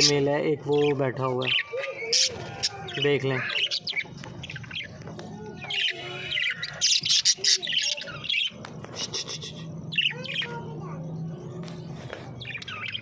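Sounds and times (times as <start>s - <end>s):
caged birds chirping and squawking: 0.0s - 13.0s.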